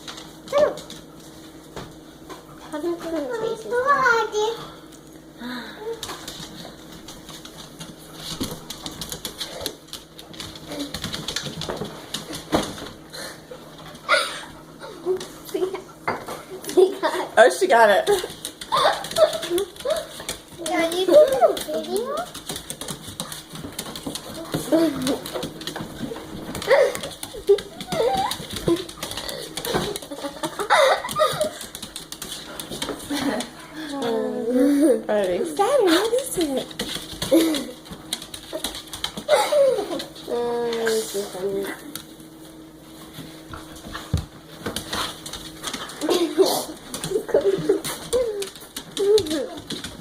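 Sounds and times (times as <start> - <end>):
dog claws clicking on hard floor: 6.0 - 13.0, 18.0 - 34.2, 35.2 - 42.2, 43.5 - 50.0.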